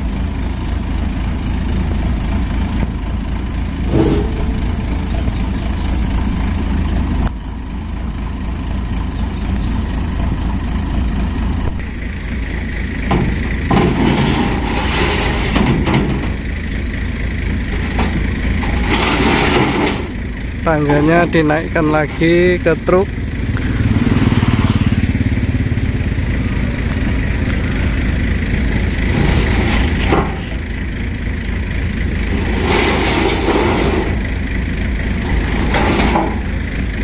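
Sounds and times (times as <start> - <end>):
heavy machinery engine idling: 0.0 - 37.0
metal clanks and knocks: 3.8 - 6.0, 13.0 - 16.6, 17.6 - 22.8, 28.4 - 31.0, 35.2 - 37.0.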